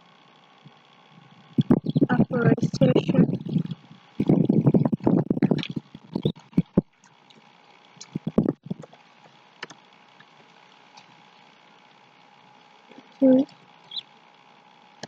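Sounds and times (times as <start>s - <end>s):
keyboard typing: 8.0s - 8.9s.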